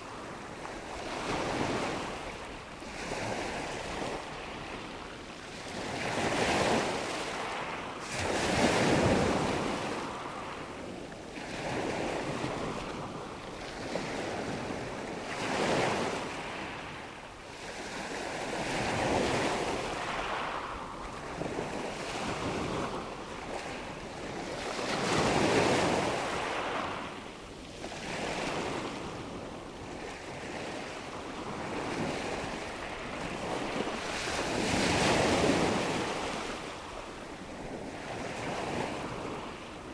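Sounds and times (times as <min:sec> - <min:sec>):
ocean waves breaking on shore: 0:11.4 - 0:39.9.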